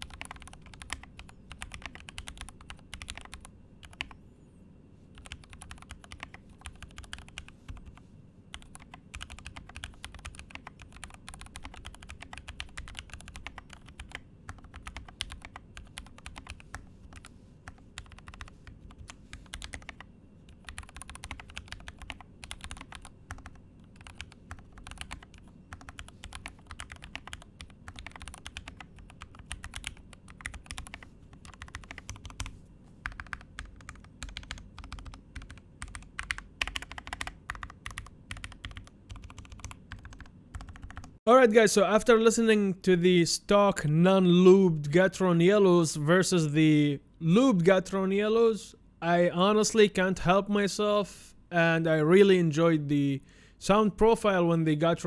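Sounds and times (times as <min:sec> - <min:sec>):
fast typing on mechanical keyboard: 0:00.0 - 0:04.2, 0:05.2 - 0:41.2.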